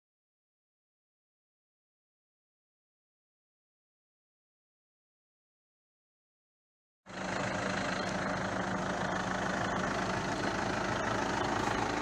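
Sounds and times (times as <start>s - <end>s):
vehicle engine running: 7.1s - 12.0s.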